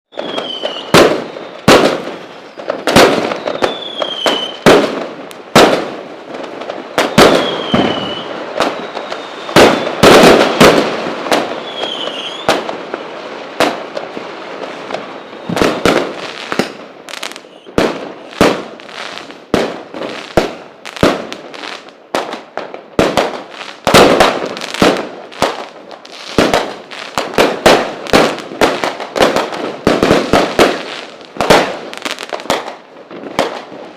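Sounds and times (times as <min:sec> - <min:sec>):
falling firework whistles: 0:00.1 - 0:05.8, 0:06.4 - 0:12.7, 0:14.5 - 0:22.0
fireworks bangs: 0:00.1 - 0:33.9
fireworks crackling: 0:00.1 - 0:33.9.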